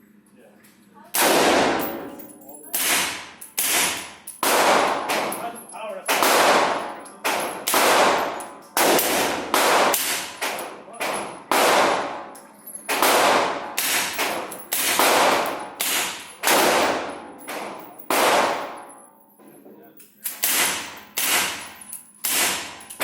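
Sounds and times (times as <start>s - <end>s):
gunshots: 1.2s - 2.0s, 2.8s - 5.4s, 6.1s - 12.3s, 12.9s - 18.8s, 20.3s - 22.8s.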